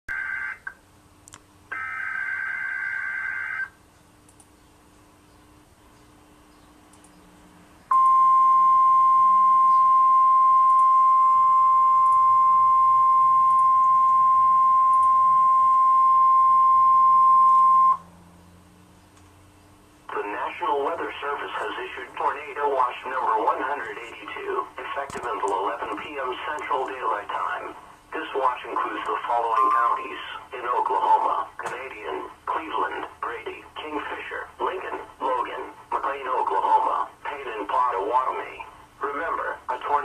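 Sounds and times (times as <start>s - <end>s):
steady loud alarm tone: 1.7s - 3.8s, 7.9s - 18.1s.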